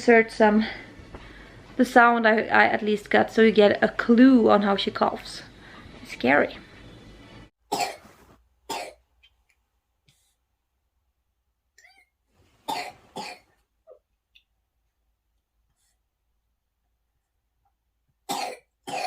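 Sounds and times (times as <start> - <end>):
toddler coughing: 7.7 - 8.0, 8.7 - 9.0, 12.7 - 13.5, 18.3 - 19.0.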